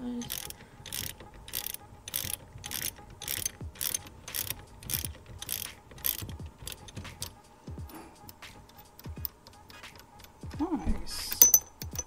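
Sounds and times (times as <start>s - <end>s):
socket ratchet clicking: 0.2s - 10.5s, 11.3s - 12.0s.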